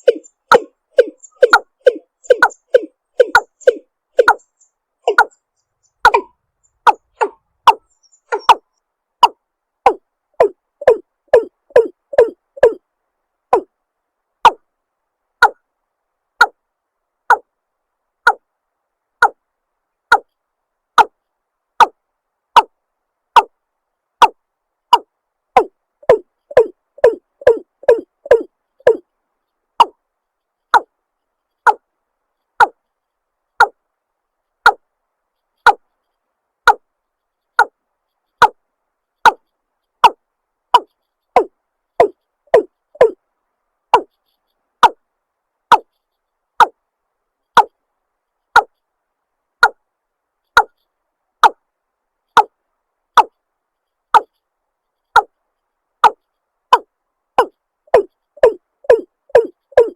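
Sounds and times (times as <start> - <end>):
bird calling hollow notes: 0.0 - 12.8, 13.5 - 13.7, 14.4 - 14.6, 15.4 - 15.6, 16.4 - 16.6, 17.3 - 17.5, 19.2 - 19.4, 21.0 - 21.2, 21.8 - 23.6, 24.2 - 29.1, 29.8 - 30.0, 30.7 - 30.9, 31.6 - 31.8, 32.6 - 32.8, 34.6 - 34.8, 40.0 - 43.2, 43.9 - 44.2, 44.8 - 45.0, 45.7 - 46.0, 56.0 - 59.9.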